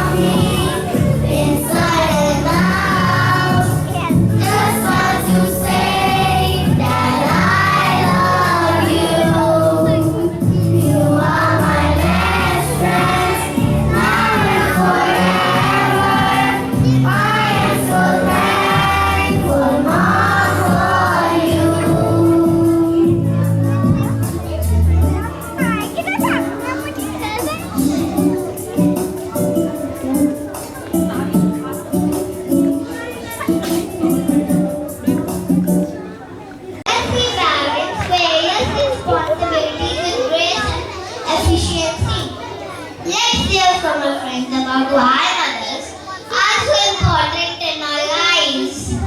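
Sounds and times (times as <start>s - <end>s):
several voices singing: 0.0s - 23.4s
instrumental backing: 0.0s - 37.2s.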